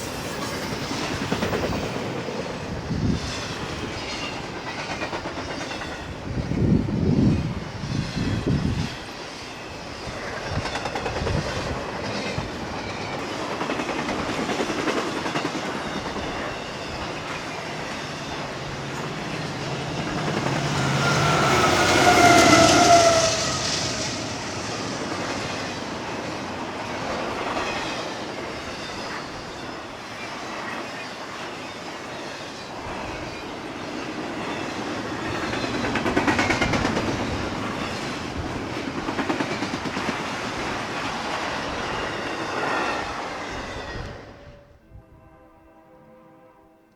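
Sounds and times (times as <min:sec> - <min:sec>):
freight train wheels clacking: 0:00.0 - 0:44.3
high-pitched wheel squeal: 0:15.7 - 0:25.9.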